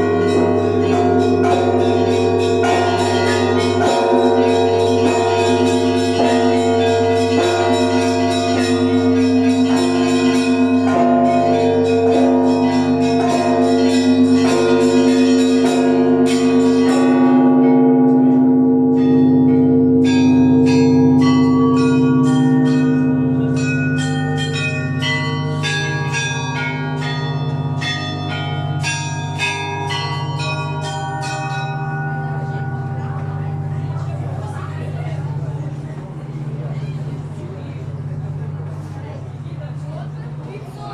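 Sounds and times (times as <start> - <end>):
deep bells humming: 0.0 - 40.9
small bells striking: 0.0 - 40.9.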